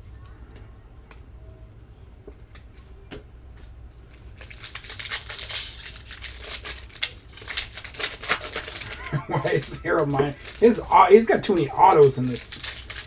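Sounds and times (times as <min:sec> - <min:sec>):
crackly rustling: 0:01.2 - 0:13.0
wrapper tearing and crinkling: 0:04.1 - 0:13.0.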